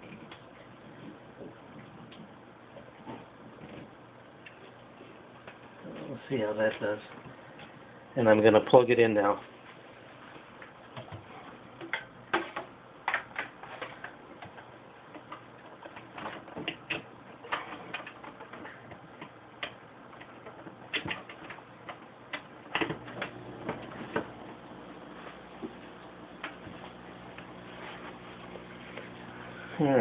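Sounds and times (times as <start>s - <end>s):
air pump hum: 22.3s - 30.0s.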